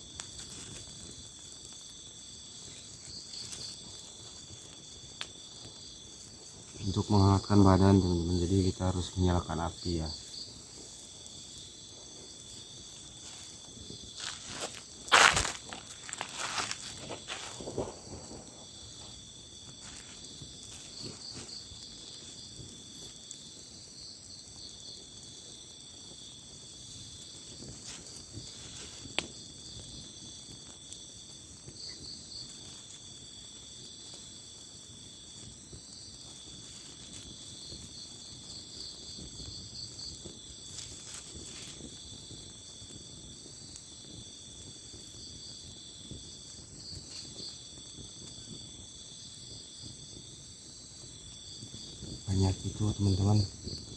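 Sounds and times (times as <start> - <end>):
crickets trilling: 0.0 - 53.9.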